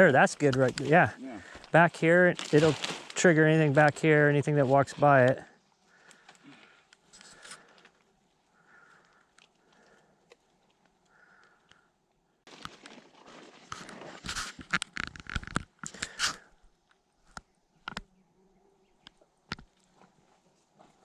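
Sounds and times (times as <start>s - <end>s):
dry twigs crunching and snapping: 0.5s - 3.2s, 5.9s - 11.8s, 12.5s - 16.4s.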